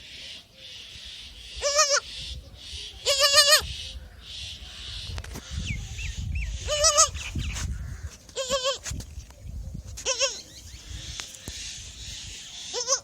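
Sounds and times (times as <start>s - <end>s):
faint bird chirping: 0.0s - 13.0s
goat kid bleating: 1.6s - 2.0s, 3.0s - 3.7s, 6.6s - 7.3s, 8.3s - 8.9s, 10.0s - 10.5s, 12.7s - 13.0s.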